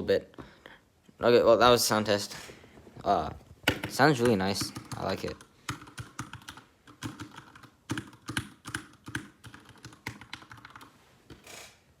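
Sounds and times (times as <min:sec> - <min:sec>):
mechanical keyboard typing: 0:03.7 - 0:10.9.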